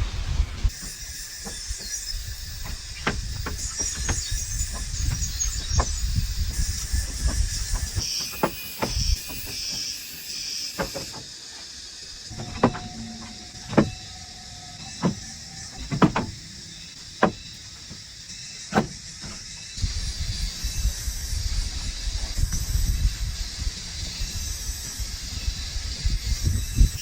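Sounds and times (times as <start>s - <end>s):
sharp knocks: 2.6s - 9.9s, 10.8s - 11.3s, 12.3s - 18.1s, 18.7s - 19.4s.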